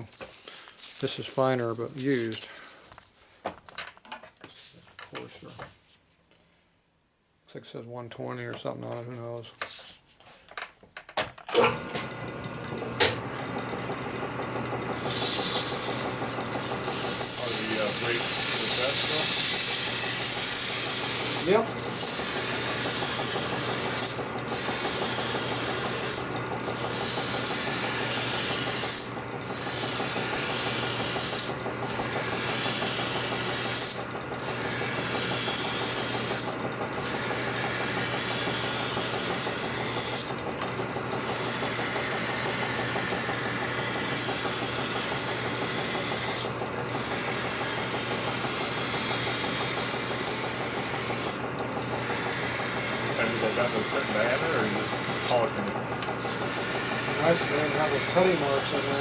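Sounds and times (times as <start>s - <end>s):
lathe running hum: 11.6s - 59.0s
sandpaper rubbing on spinning part: 14.9s - 55.5s, 56.1s - 59.0s.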